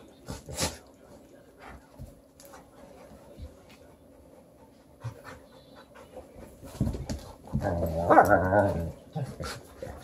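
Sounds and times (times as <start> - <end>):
dog panting: 1.5 - 7.6.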